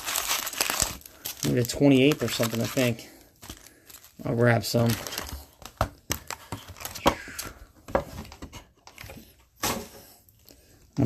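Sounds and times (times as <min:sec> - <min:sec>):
foil wrappers crinkling: 0:00.0 - 0:07.6.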